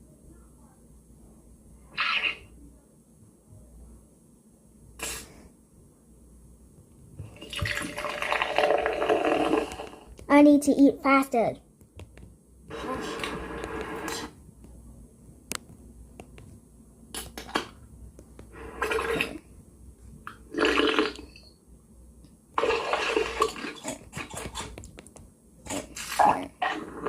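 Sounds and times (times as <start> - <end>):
gobbling and munching: 2.0 - 2.4.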